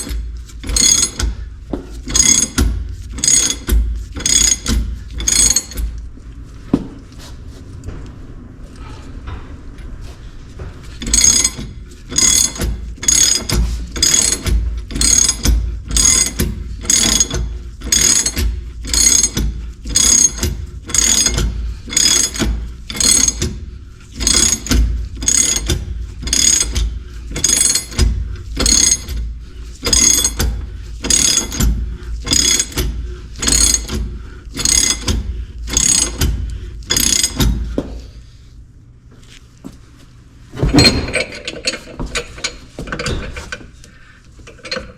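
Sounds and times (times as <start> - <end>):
ratchet wrench clicking: 0.0 - 1.4, 2.0 - 6.0, 11.0 - 29.2, 29.8 - 37.6.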